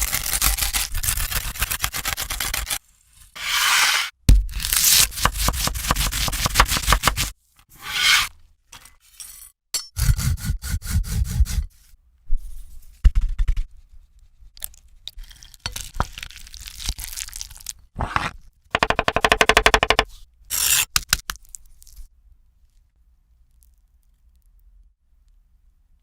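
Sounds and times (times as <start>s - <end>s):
quick evenly spaced strokes: 3.4s - 4.1s
kitchen scrapes and taps: 18.0s - 19.2s.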